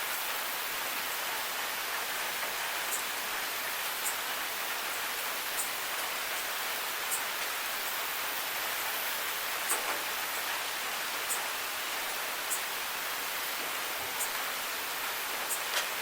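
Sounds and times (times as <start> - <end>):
rain falling: 0.0 - 16.0.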